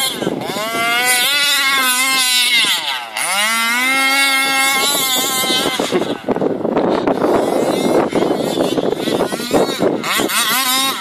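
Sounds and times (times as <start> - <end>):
rough noisy rush: 0.0 - 11.0
two-stroke engine revving: 0.0 - 11.0.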